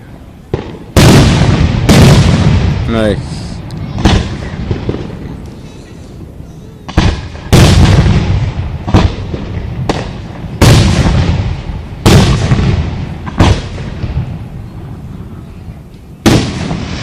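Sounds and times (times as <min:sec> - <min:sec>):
fireworks booming: 0:00.0 - 0:17.0.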